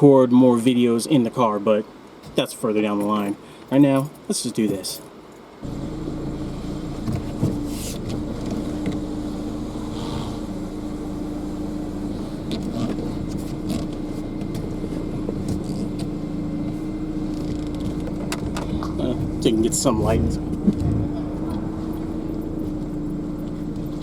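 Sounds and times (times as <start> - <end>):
car engine hum from inside cabin: 5.6 - 24.0.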